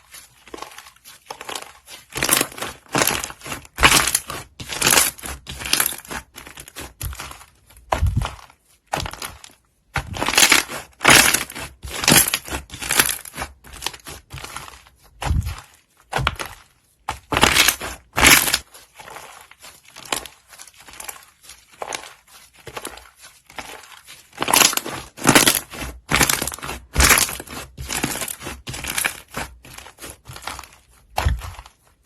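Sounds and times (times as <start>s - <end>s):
slime squishing: 0.0s - 32.0s.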